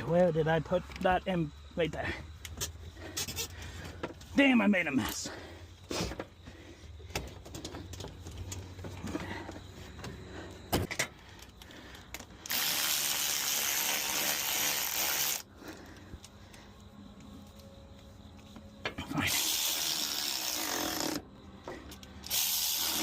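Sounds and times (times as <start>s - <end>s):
loud spray hiss: 19.3s - 20.6s, 22.3s - 23.0s.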